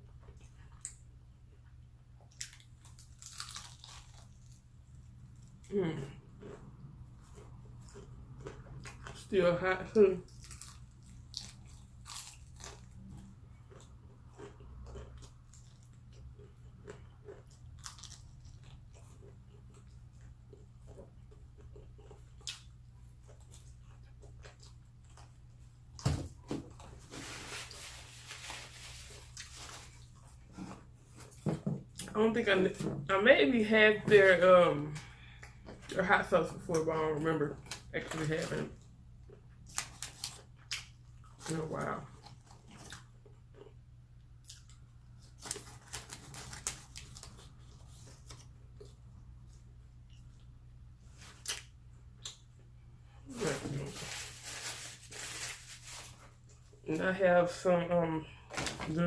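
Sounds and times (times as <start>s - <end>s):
crackly crunching and rustling: 0.0s - 32.2s, 44.4s - 52.5s, 53.3s - 57.0s.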